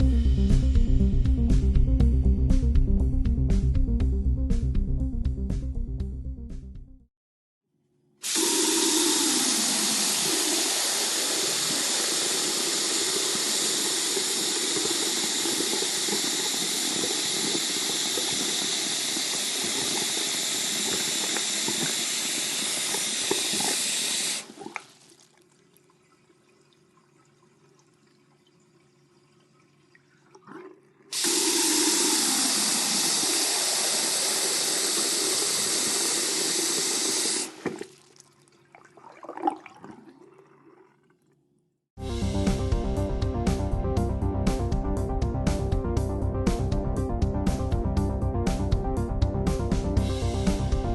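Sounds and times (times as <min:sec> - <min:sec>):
water gushing from faucet: 0:08.2 - 0:41.2.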